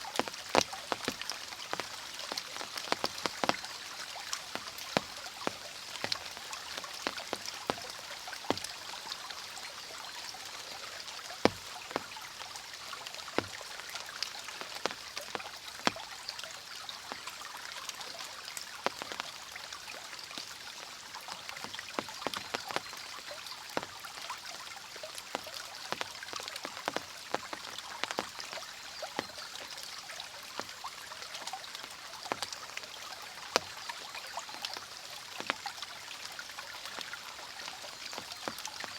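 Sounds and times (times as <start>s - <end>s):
rain falling: 0.0s - 38.9s
stream water rushing: 0.0s - 38.9s
water drips and splashes: 0.0s - 38.9s.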